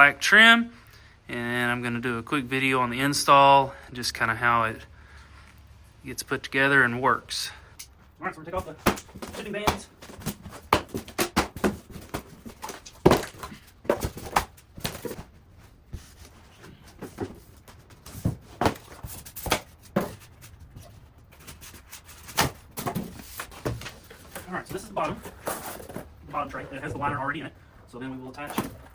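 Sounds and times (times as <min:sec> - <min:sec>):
rustling handling noise: 0:07.9 - 0:28.9.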